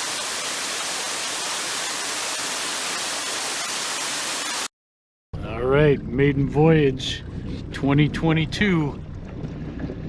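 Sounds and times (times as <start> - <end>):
steady static hiss: 0.0 - 4.7.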